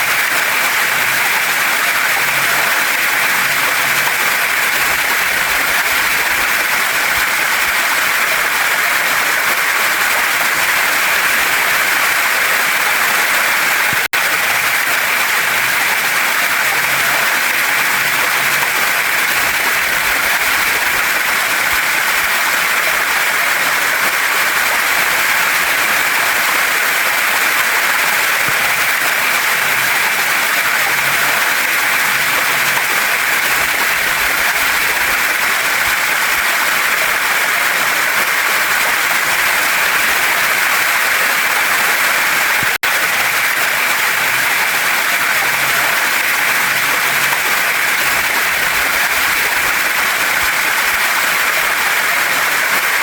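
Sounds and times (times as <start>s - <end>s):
water rushing over rocks: 0.0s - 53.0s.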